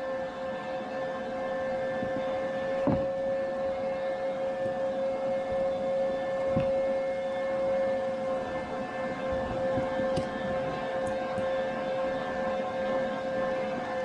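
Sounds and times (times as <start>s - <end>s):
soft knocks: 2.6s - 3.8s, 6.3s - 11.5s.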